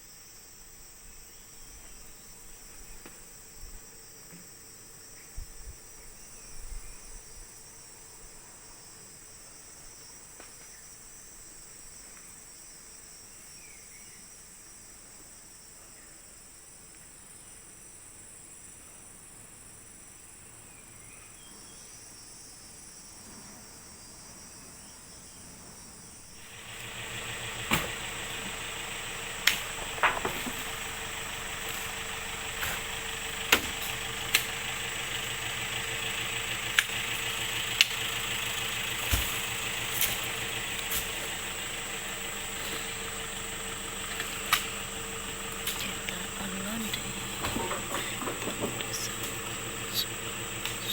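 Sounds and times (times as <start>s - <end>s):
insects calling: 0.0s - 50.9s
vehicle engine running: 26.3s - 50.9s
sharp knocks and rattles: 26.5s - 41.8s.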